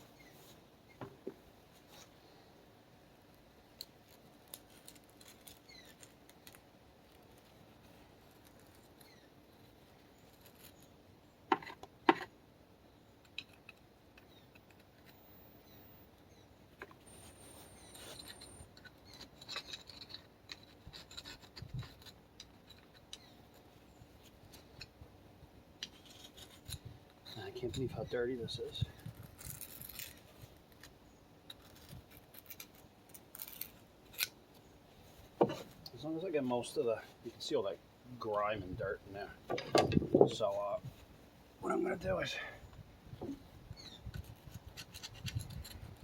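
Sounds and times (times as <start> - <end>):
tools scraping and rubbing: 16.8 - 24.9, 25.8 - 28.2, 28.9 - 36.0, 43.2 - 46.0
metal clanks: 39.5 - 40.5.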